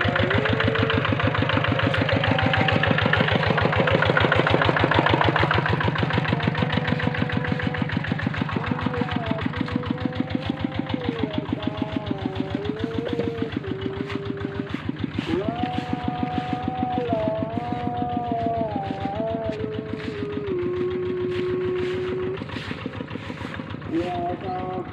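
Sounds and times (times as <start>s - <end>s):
small engine running: 0.0s - 24.9s.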